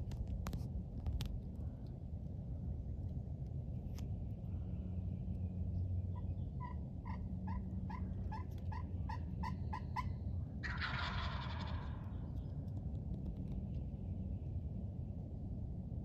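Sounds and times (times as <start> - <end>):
turkey yelps: 6.6 - 12.1
turkey gobbling: 6.6 - 12.2.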